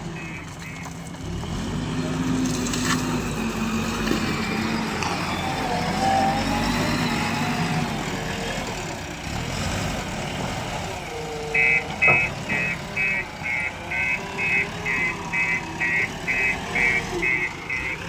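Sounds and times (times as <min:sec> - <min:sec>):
diesel engine under load: 0:00.0 - 0:18.0
reversing alarm beeping: 0:11.5 - 0:18.0
knocks: 0:12.0 - 0:12.8.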